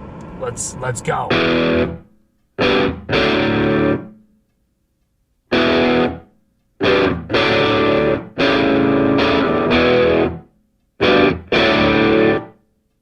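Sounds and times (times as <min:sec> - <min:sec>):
distorted electric guitar stabs: 0:00.0 - 0:02.0.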